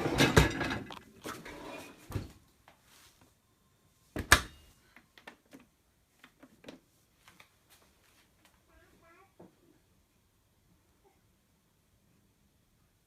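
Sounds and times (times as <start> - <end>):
dishwasher clunk: 0.0 - 0.9.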